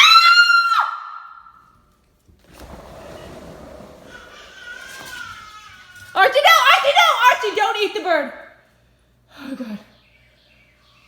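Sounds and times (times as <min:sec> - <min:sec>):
woman screaming: 0:00.0 - 0:01.2.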